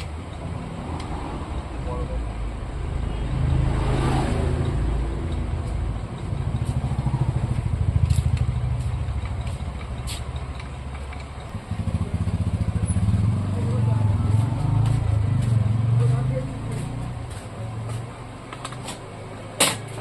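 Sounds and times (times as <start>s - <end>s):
motorcycle engine running: 5.3s - 16.5s.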